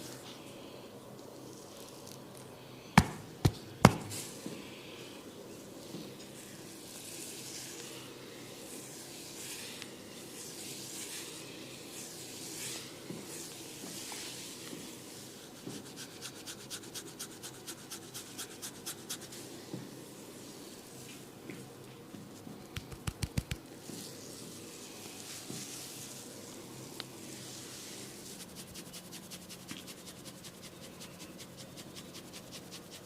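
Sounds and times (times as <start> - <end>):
fingers scratching through hair: 15.4 - 19.4, 22.8 - 23.6, 27.7 - 33.0
quick evenly spaced taps: 22.7 - 23.6.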